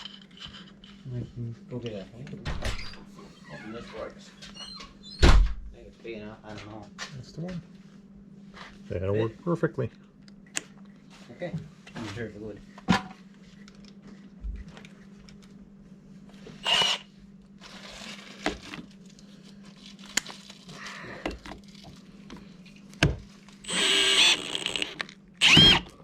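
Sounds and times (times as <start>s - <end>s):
power drill driving a screw: 16.6s - 17.1s, 23.6s - 25.9s.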